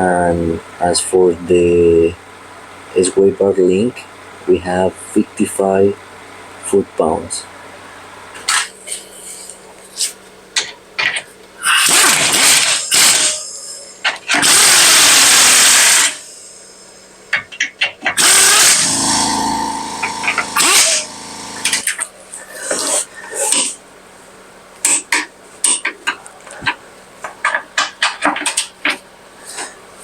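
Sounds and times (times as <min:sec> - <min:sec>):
power tool driving bolts: 0:11.7 - 0:13.4, 0:14.0 - 0:16.3, 0:17.3 - 0:22.0.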